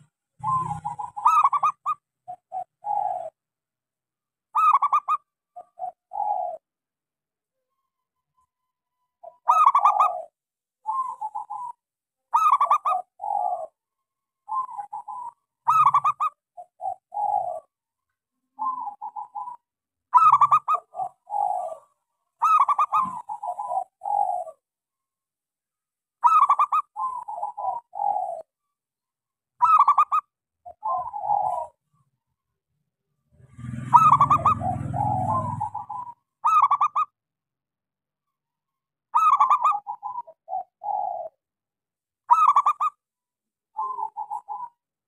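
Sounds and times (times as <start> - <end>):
dove cooing song: 0.0 - 3.5, 4.5 - 6.8, 7.5 - 13.8, 14.4 - 24.7, 26.2 - 28.6, 29.6 - 32.2, 33.3 - 37.2, 39.1 - 41.5, 42.2 - 43.0, 43.7 - 44.9.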